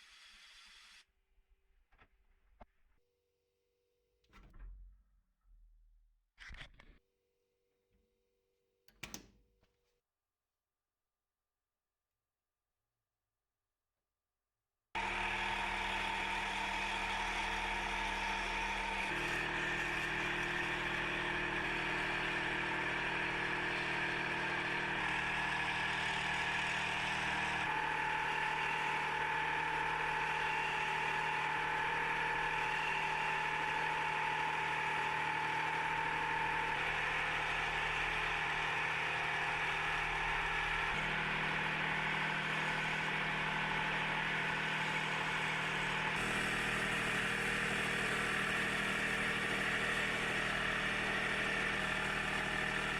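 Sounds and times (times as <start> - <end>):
hiss of wood cutting: 0.0 - 1.0
wood lathe motor hum: 15.0 - 52.9.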